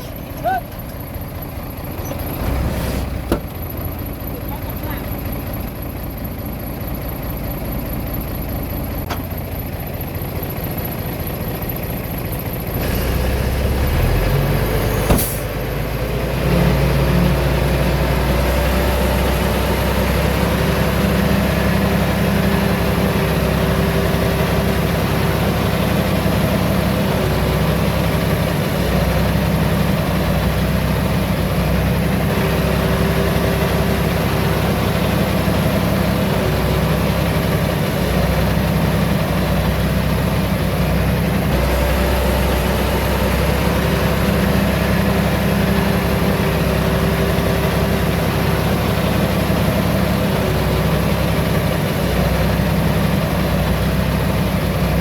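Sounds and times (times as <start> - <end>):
heavy diesel engine running: 0.0 - 55.0.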